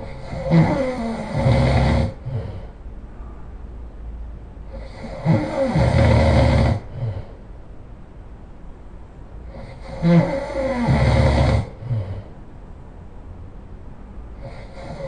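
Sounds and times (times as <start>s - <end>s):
person snoring loudly: 0.0s - 2.7s, 4.7s - 7.4s, 9.5s - 12.3s, 14.4s - 15.0s.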